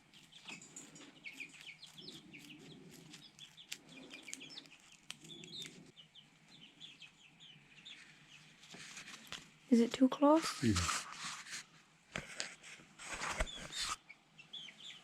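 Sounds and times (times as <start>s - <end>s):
chicks peeping: 0.0s - 8.7s, 13.4s - 15.0s.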